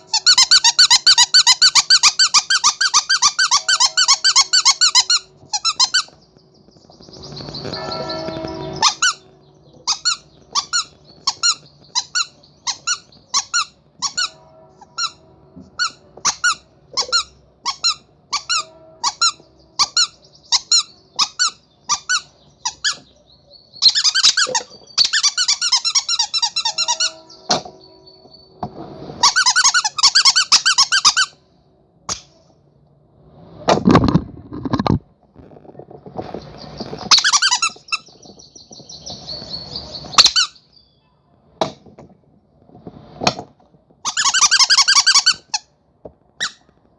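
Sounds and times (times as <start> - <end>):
rubber squeaky toy squeaking: 0.0 - 6.2, 7.4 - 23.2, 23.8 - 27.7, 29.2 - 31.4, 34.0 - 38.4, 39.0 - 40.6, 44.0 - 45.7, 46.4 - 46.7.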